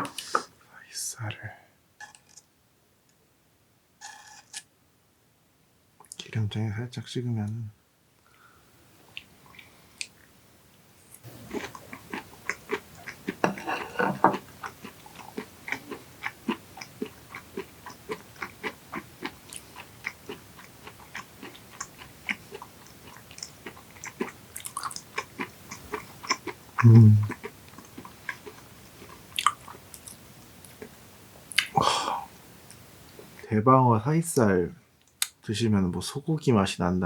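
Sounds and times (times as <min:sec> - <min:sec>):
wet chewing mouth clicks: 0:11.1 - 0:13.6, 0:14.3 - 0:30.9, 0:31.5 - 0:31.8.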